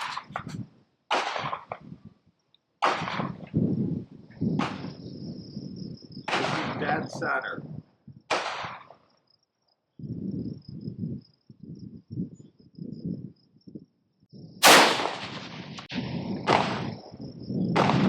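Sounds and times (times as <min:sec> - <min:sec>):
wind buffeting microphone: 0:00.0 - 0:00.8, 0:01.4 - 0:02.3, 0:03.0 - 0:08.8, 0:10.0 - 0:18.0
rifle shot: 0:01.1 - 0:01.8, 0:02.8 - 0:03.4, 0:06.3 - 0:07.0, 0:08.3 - 0:08.9, 0:14.6 - 0:17.0, 0:17.8 - 0:18.0
insect chirring: 0:04.4 - 0:14.6.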